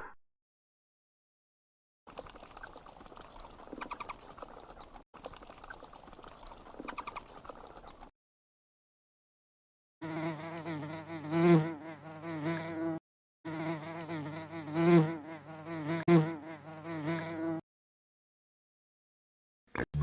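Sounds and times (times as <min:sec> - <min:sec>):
insect buzzing: 0:02.1 - 0:08.1, 0:10.0 - 0:17.6.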